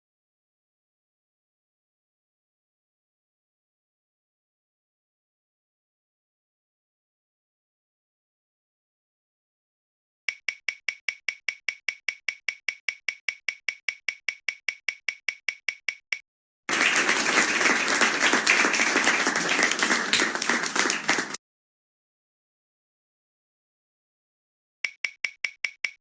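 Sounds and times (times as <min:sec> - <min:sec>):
applause sound effect: 0:16.7 - 0:21.4.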